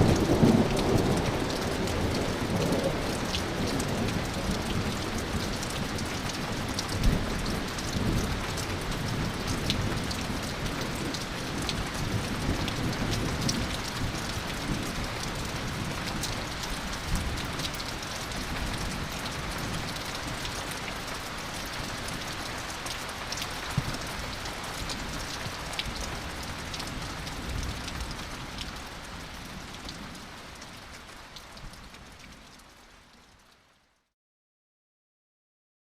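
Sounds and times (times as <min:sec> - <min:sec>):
low rumbling thunder: 0:00.0 - 0:20.4
heavy rain: 0:00.0 - 0:34.1.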